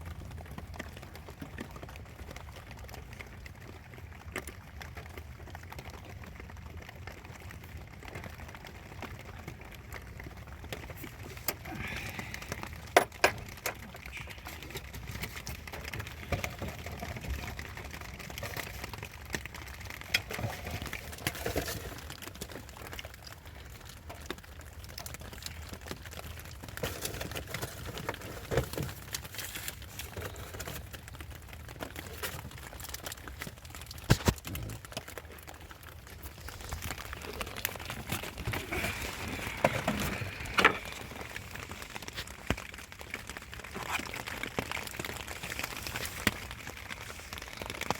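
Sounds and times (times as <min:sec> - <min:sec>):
rustling: 0:10.7 - 0:47.9.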